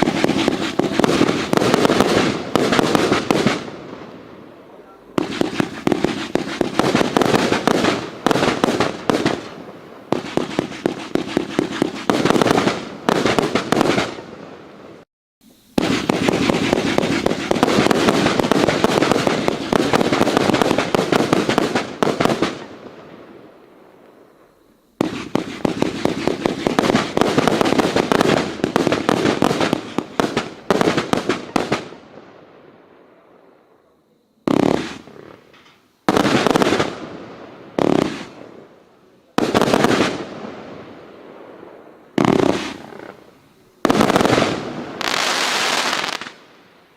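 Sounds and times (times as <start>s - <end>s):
firecracker rolls going off: 15.4s - 21.8s.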